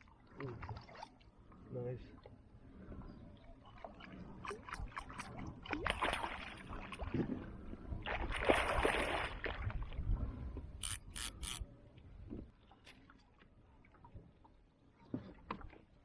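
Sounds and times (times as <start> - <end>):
water splashing and sloshing: 0.0 - 10.7, 12.6 - 16.0
sharp clicks: 10.8 - 11.6.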